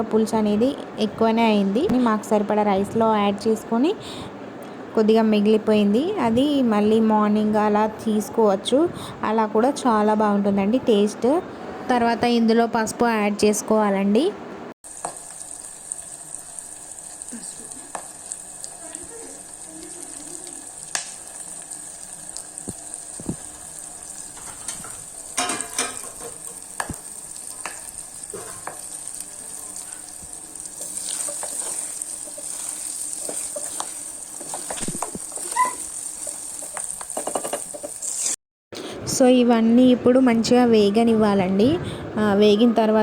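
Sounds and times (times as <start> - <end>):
oil sizzling in a pan: 14.8 - 38.4
spoon scraping a pan: 27.5 - 38.4.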